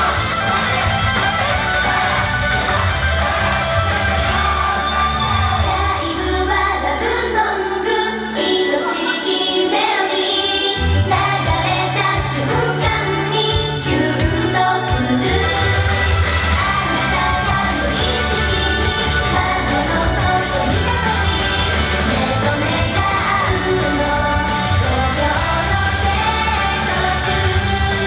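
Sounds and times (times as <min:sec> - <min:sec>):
female group singing pop song: 0:00.0 - 0:28.0.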